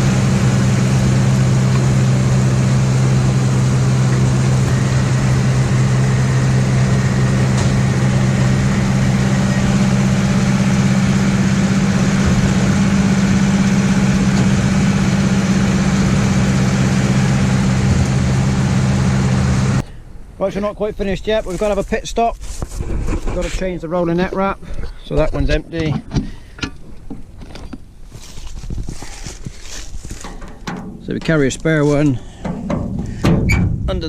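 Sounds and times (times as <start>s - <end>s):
baler machinery running: 0.0s - 20.4s
tractor engine running: 0.0s - 22.0s.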